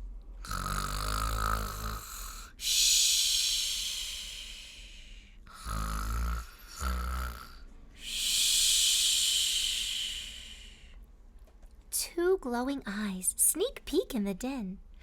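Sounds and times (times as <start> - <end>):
woman imitating snoring: 0.4 - 4.9, 5.5 - 10.8.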